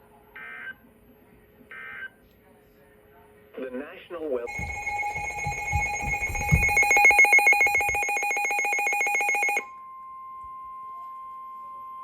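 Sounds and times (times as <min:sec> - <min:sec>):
steady alarm tone: 0:04.5 - 0:09.6.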